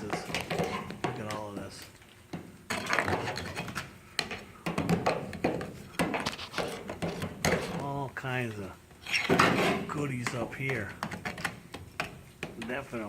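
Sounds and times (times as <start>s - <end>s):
debris knocking and scraping: 0.0s - 8.0s.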